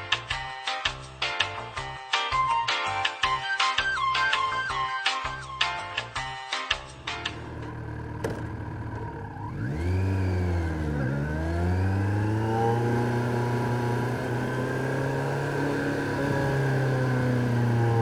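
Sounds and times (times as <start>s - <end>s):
motorcycle engine revving: 7.1s - 18.0s.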